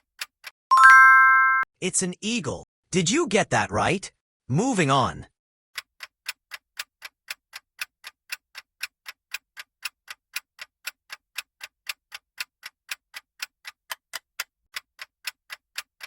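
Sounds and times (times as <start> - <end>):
clock ticking: 5.8 - 16.0.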